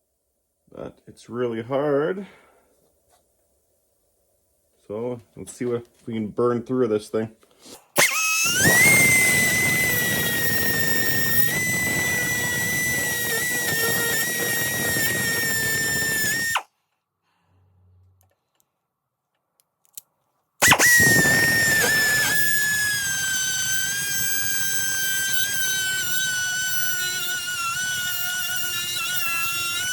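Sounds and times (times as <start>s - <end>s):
die grinder whining: 8.0s - 16.7s, 20.6s - 29.9s.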